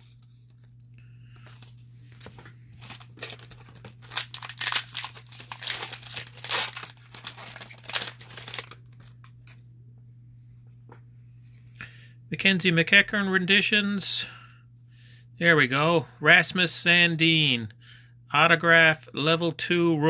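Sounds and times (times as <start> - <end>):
foil wrapper crinkling and tearing: 2.8 - 9.6.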